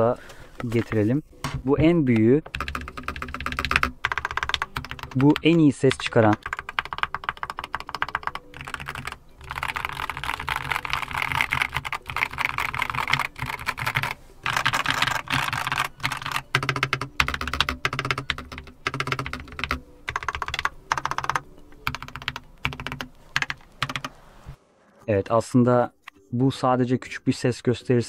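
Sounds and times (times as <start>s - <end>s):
mechanical keyboard typing: 2.1s - 24.1s.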